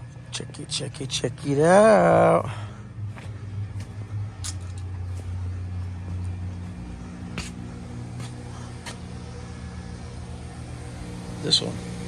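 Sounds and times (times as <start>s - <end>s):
hvac equipment humming: 0.0s - 12.0s.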